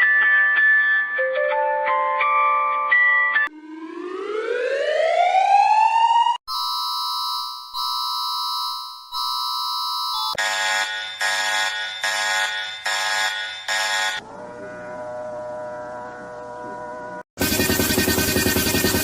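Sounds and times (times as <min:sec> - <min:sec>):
rising siren sweep: 0:03.5 - 0:06.4
harsh buzzing alarm tone: 0:06.5 - 0:14.2.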